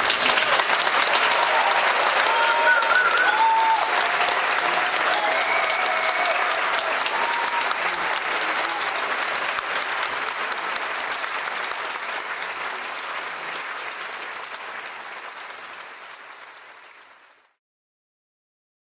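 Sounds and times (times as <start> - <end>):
audience applauding: 0.0 - 17.6.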